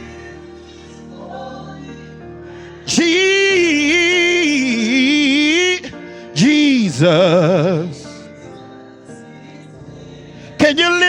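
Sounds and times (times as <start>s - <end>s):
solo voice singing with vibrato: 2.8s - 9.6s.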